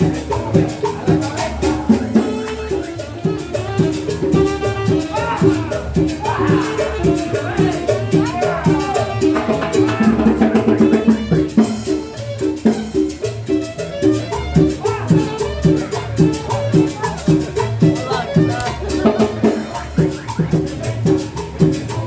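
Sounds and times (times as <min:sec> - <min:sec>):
drums: 0:00.0 - 0:22.0
salsa music: 0:00.0 - 0:22.0
shaker rattling: 0:00.0 - 0:22.0.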